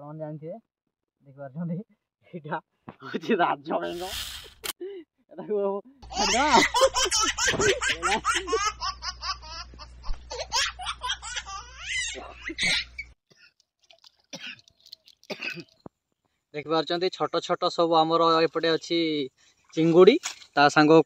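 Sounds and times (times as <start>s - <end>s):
high-pitched laughter: 6.0s - 13.1s.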